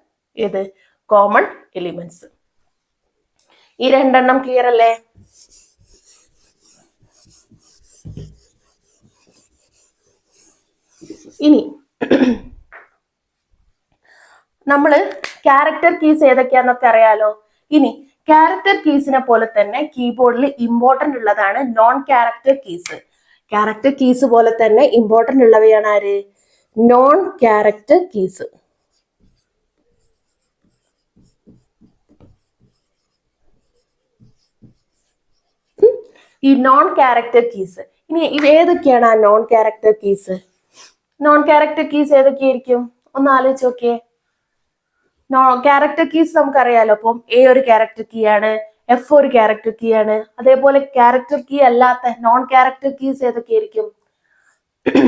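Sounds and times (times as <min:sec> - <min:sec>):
scratching and rubbing: 0:04.3 - 0:11.7, 0:28.4 - 0:36.0
pen writing strokes: 0:04.8 - 0:11.7, 0:28.4 - 0:35.8
soft low thump: 0:08.0 - 0:08.4.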